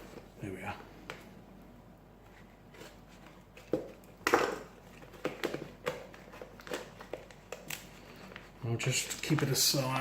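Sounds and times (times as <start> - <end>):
wrapping rustling and crinkling: 2.4 - 10.0.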